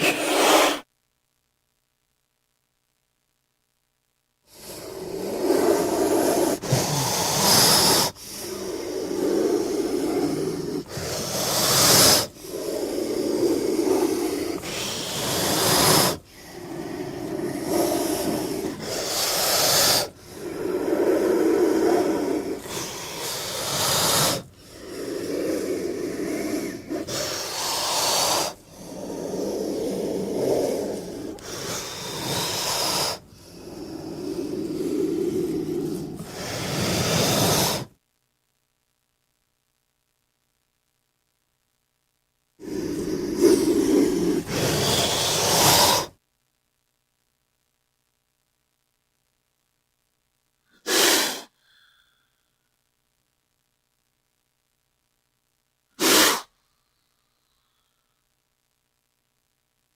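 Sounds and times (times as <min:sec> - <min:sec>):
snake growling hiss: 0:00.0 - 0:00.8, 0:04.5 - 0:37.9, 0:42.6 - 0:46.2, 0:50.8 - 0:52.2, 0:56.0 - 0:56.5.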